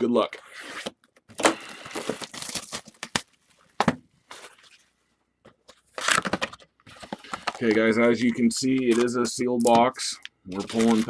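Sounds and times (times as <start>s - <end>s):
plastic wrap ripping: 1.4s - 3.3s, 10.5s - 11.0s
plastic shrink-wrap crinkling: 1.4s - 3.7s, 10.5s - 11.0s.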